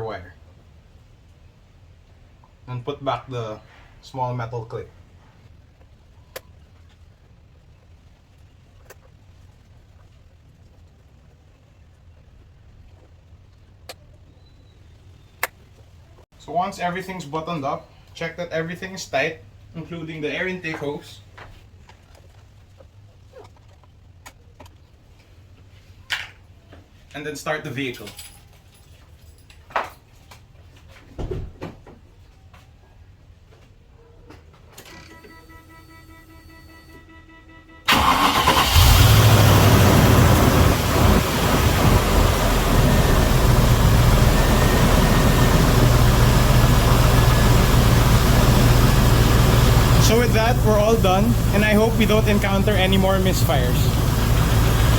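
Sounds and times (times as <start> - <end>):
car engine starting and idling: 37.9 - 54.9.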